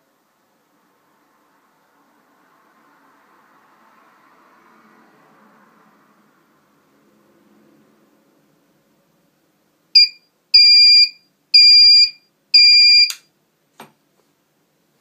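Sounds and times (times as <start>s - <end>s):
alarm clock beeping: 10.0s - 13.2s.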